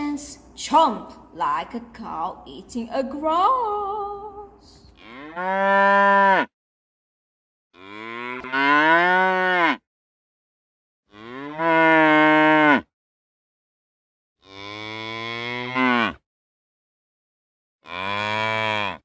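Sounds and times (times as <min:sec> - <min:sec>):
cow mooing: 0:05.0 - 0:06.5, 0:07.8 - 0:09.8, 0:11.1 - 0:12.9, 0:14.4 - 0:16.2, 0:17.8 - 0:19.0.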